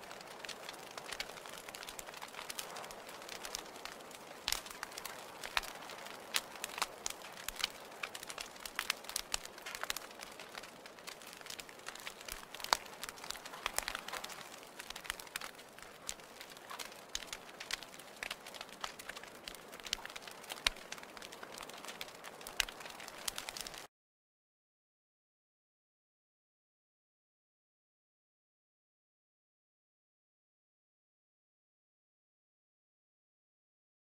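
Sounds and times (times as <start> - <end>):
wood fire crackling: 0.0 - 23.9.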